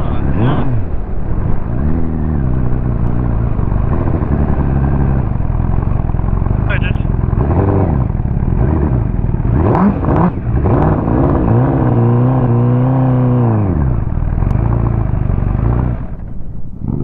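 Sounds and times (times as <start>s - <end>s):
motorcycle engine accelerating: 0.0s - 17.0s
wind and road noise: 0.0s - 17.0s.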